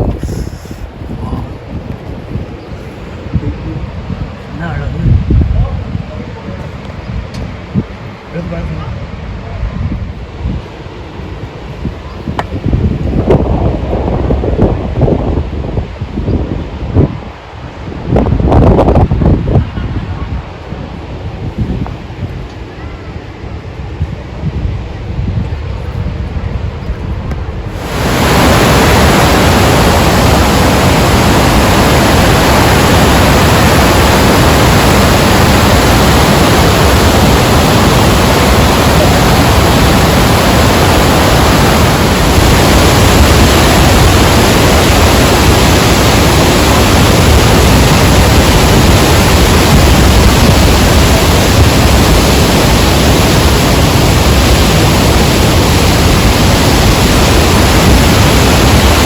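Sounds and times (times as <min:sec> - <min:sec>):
waterfall rushing: 0:27.6 - 0:59.0.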